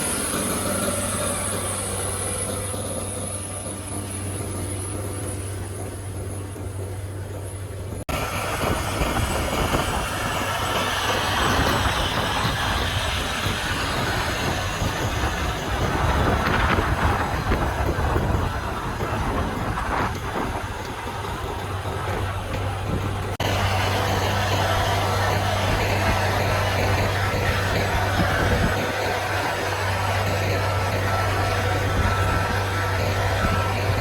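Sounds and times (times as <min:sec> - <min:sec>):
clatter of tracks and cultivator: 0:00.0 - 0:34.0
tractor engine: 0:00.0 - 0:34.0.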